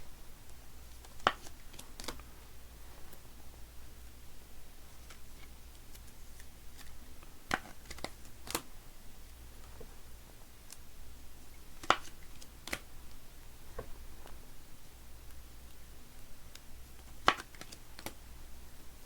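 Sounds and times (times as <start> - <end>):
sharp snaps: 0.4 - 2.3, 11.7 - 13.2, 15.3 - 18.2
cards and plastic cases tapping: 1.0 - 2.2, 7.5 - 8.7, 11.8 - 12.8, 17.0 - 18.2.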